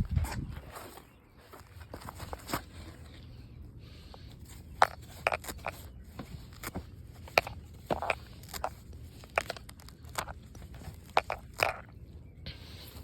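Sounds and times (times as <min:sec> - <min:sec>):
weeds crunching as pulled out: 0:04.1 - 0:11.8.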